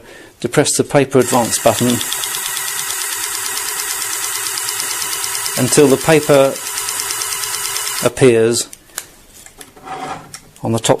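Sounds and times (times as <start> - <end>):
printer paper feed whirring and ticking: 1.2 - 8.1.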